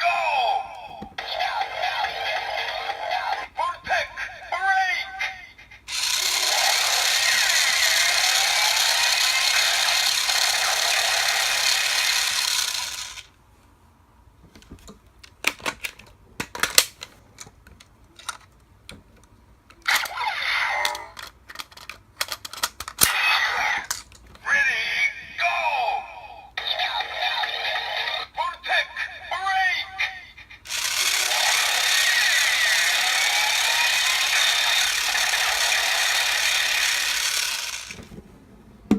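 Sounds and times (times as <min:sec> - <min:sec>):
toy whirring electronic sound: 0:01.2 - 0:03.6, 0:04.6 - 0:13.3, 0:26.6 - 0:28.8, 0:29.5 - 0:38.1
plastic toy clicks: 0:05.9 - 0:13.3, 0:20.8 - 0:24.2, 0:30.7 - 0:38.1.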